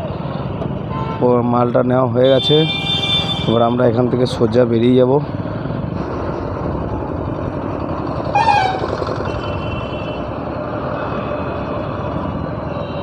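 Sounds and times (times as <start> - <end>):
vehicle horn toot: 2.2 - 3.6, 8.4 - 10.2
motorcycle engine and road noise: 2.7 - 13.0.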